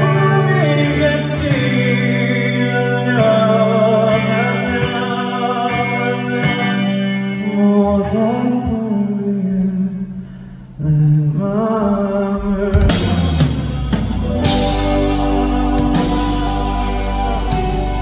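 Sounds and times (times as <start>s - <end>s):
man singing long notes: 0.0s - 10.1s, 10.8s - 18.0s
live band music: 12.6s - 18.0s.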